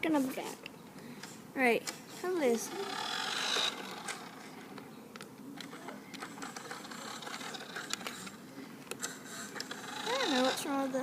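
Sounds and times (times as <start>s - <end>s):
toy remote car clicks and rattles: 2.7s - 4.4s, 5.6s - 10.8s.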